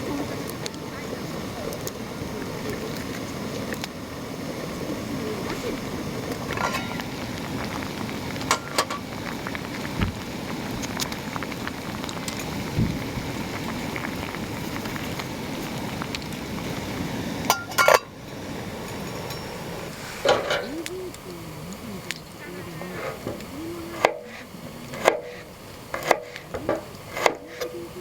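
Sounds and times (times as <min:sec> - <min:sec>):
campfire crackling: 0:00.0 - 0:28.0
sharp pops of fire: 0:06.3 - 0:19.5, 0:23.3 - 0:27.7.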